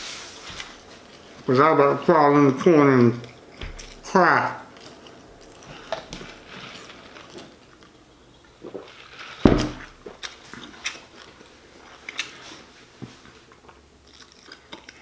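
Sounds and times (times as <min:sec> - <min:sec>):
biting and chewing sandwich: 0:02.6 - 0:15.0
loud thump: 0:09.5 - 0:10.0
wet mouth clicks and crunches: 0:13.6 - 0:15.0.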